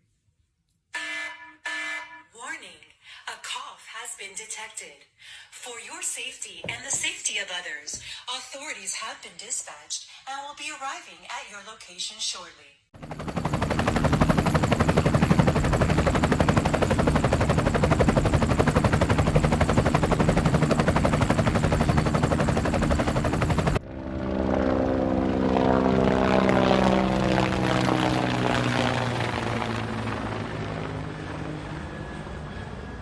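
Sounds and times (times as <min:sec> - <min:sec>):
helicopter rotor chop: 0:13.0 - 0:33.0.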